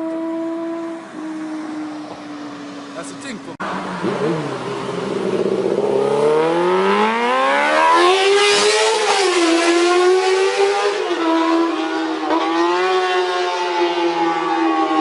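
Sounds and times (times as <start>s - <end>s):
motorcycle engine revving: 3.6s - 15.0s.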